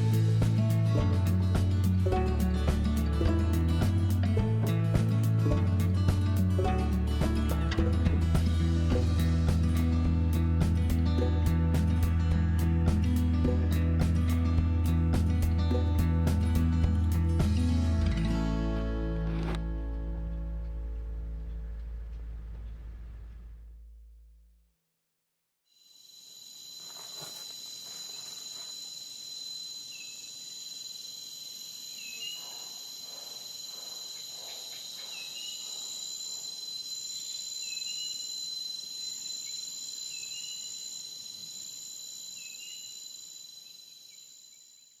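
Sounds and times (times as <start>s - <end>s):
insects trilling: 25.7s - 45.0s
short insect chirp: 25.7s - 45.0s.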